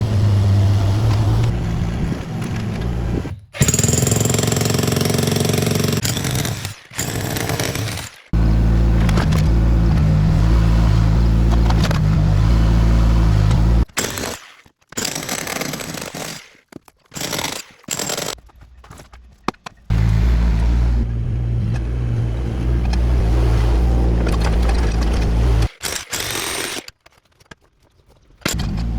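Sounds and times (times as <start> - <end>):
construction machinery humming: 0.0 - 4.7, 8.4 - 13.8, 19.9 - 25.7.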